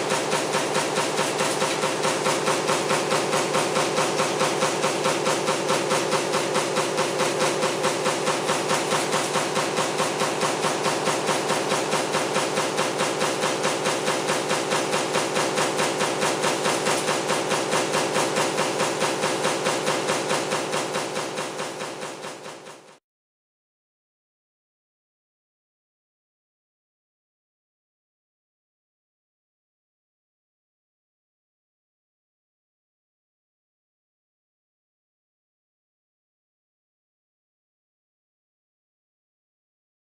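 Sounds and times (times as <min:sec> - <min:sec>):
punch press stamping: 0:00.0 - 0:22.9.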